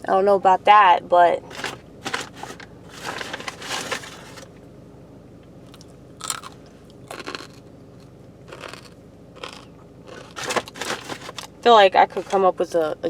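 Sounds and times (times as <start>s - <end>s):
apple crunching: 5.7s - 11.6s.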